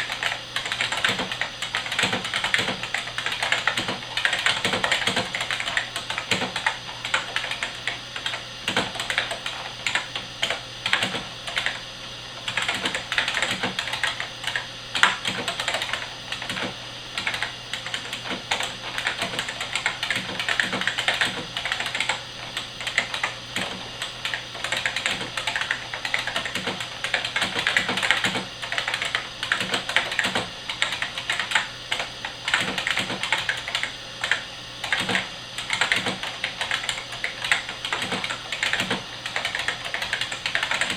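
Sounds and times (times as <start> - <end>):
mechanical keyboard typing: 0.0 - 11.8, 12.4 - 40.9.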